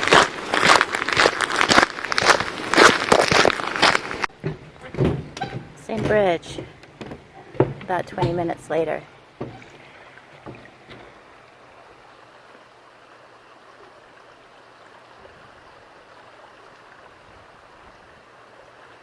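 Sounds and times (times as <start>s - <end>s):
river rushing: 0.0s - 4.9s
faint knocks: 4.3s - 11.2s.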